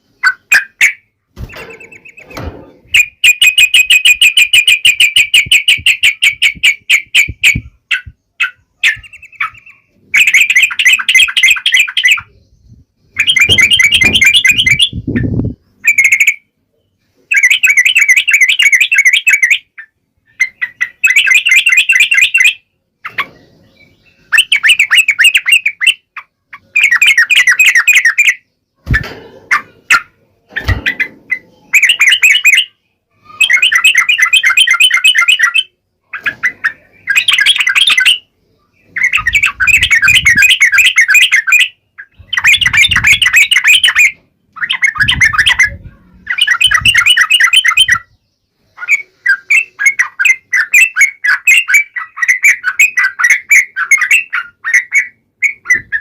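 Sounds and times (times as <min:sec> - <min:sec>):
bird singing chattering phrases: 0:00.0 - 0:56.0
low thumps: 0:12.6 - 0:15.6.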